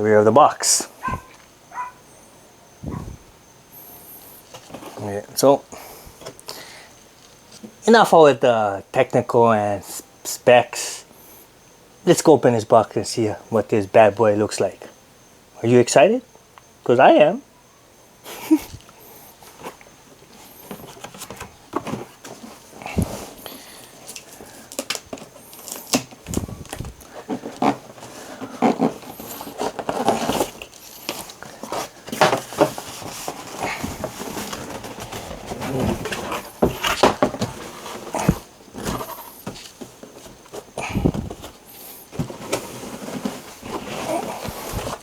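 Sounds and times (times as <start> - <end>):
cardboard and packaging rustling: 3.9 - 7.8, 18.3 - 45.0.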